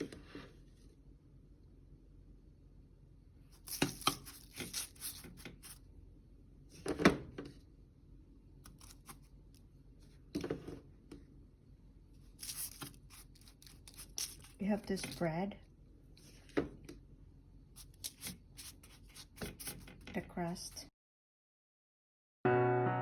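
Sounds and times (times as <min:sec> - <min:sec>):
spoon scraping crumbs in bowl: 0:03.6 - 0:05.8, 0:12.4 - 0:15.2.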